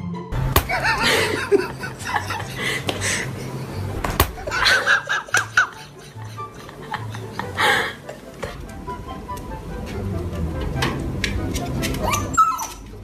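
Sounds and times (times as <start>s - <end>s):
sharp smacks: 0.4s - 0.8s, 4.0s - 4.5s
person laughing: 0.6s - 8.3s.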